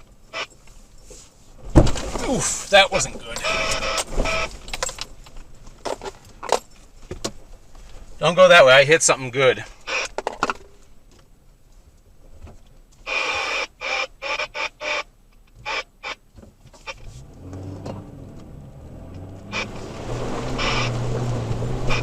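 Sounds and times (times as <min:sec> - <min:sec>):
truck engine drone: 0:17.0 - 0:22.0.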